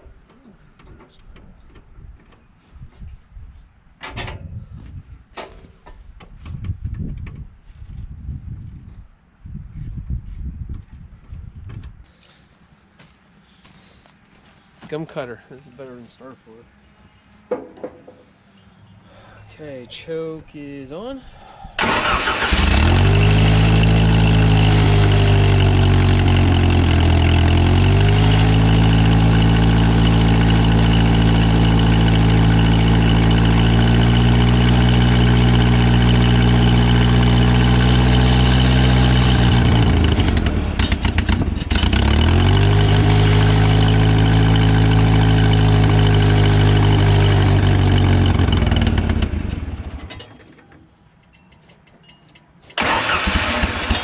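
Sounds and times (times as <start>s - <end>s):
wood chipper engine running: 21.8s - 50.2s, 52.8s - 54.0s.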